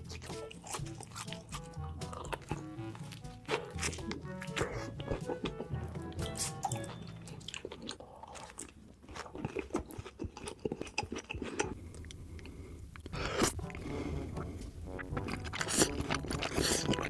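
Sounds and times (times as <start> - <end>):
crunchy bites and chewing: 0.0 - 17.0.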